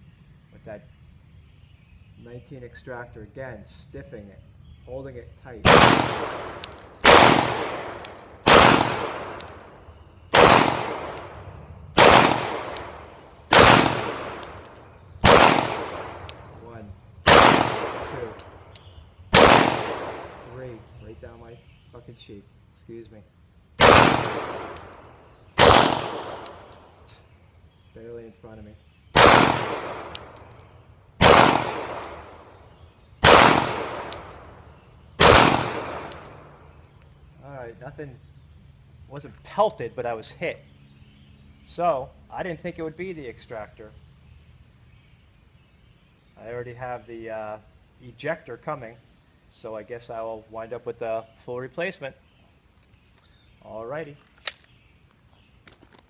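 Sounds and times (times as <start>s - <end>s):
pistol shots with echo: 5.6s - 20.6s, 23.8s - 27.0s, 29.2s - 36.7s
brass case clinking: 6.6s - 7.0s, 8.0s - 8.4s, 9.4s - 9.9s, 14.4s - 15.0s, 16.2s - 16.8s, 18.3s - 19.0s, 24.7s - 25.2s, 26.4s - 27.0s, 30.2s - 30.8s, 31.9s - 32.6s, 36.1s - 36.6s.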